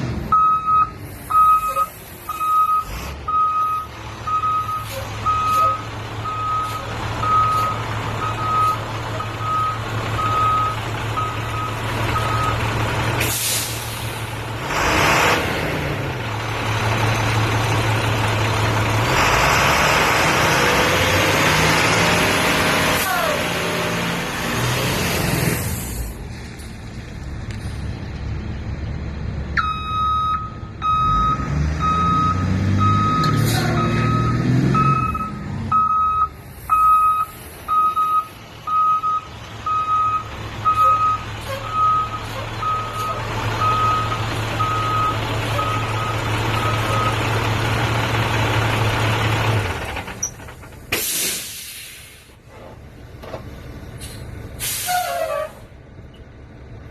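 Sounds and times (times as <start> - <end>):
diesel bus engine running: 0.0 - 56.9
backup alarm beeping: 0.3 - 12.6, 29.6 - 47.2
air brake hiss: 13.2 - 14.2, 50.9 - 52.4, 54.0 - 55.6.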